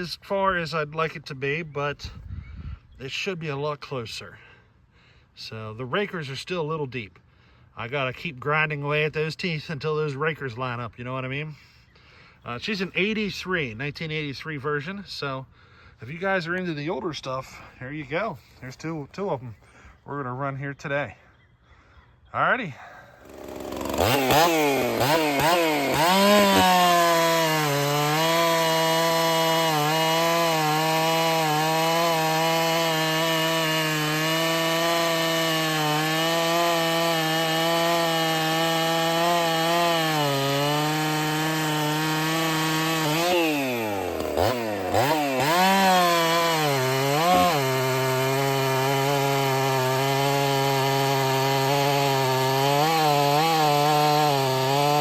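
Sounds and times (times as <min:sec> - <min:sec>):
chainsaw cutting wood: 0:23.1 - 0:55.0.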